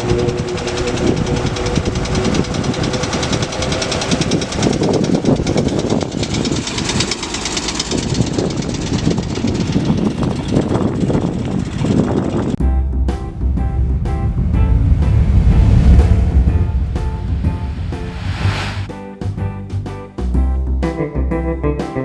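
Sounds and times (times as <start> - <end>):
car engine running: 12.8 - 18.8.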